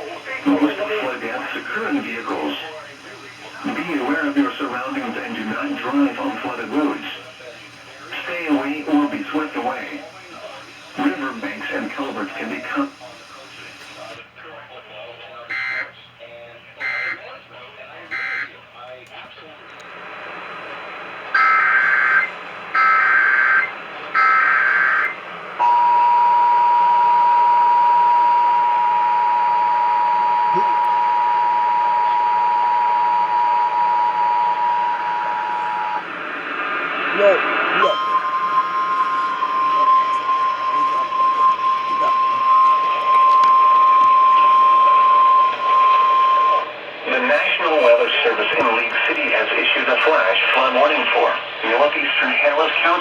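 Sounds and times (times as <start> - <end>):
radio hiss: 0.0 - 25.6, 30.1 - 53.0
steady alarm beep: 15.5 - 15.9, 16.8 - 17.2, 18.1 - 18.6, 21.4 - 36.1, 37.8 - 46.7
steady two-tone attention signal: 18.1 - 18.6, 21.4 - 36.1, 37.8 - 46.7.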